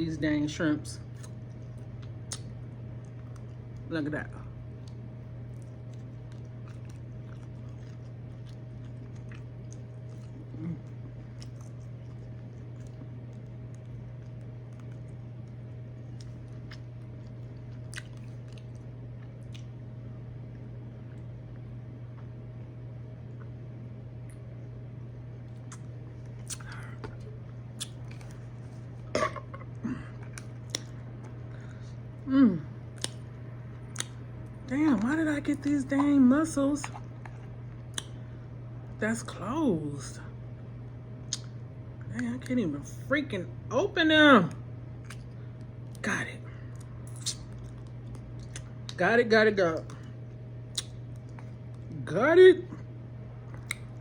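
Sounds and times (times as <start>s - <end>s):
steady low hum: 0.0s - 54.0s
chewing food: 1.0s - 22.5s, 25.4s - 32.2s, 32.8s - 39.0s, 41.2s - 42.6s, 45.0s - 46.0s, 46.6s - 49.0s, 49.7s - 52.0s, 52.7s - 54.0s
wet eating clicks and smacks: 1.1s - 3.9s, 4.5s - 22.3s, 25.4s - 31.5s, 32.8s - 38.2s, 41.2s - 41.6s, 45.0s - 46.0s, 46.7s - 49.0s, 49.7s - 52.0s, 53.4s - 54.0s
wet mouth clicks and smacks: 1.2s - 3.8s, 25.6s - 28.3s, 30.3s - 31.0s, 33.0s - 33.3s, 33.9s - 34.3s, 36.8s - 38.2s, 41.3s - 41.6s, 45.0s - 45.3s, 46.8s - 49.0s, 50.7s - 51.9s, 53.5s - 54.0s.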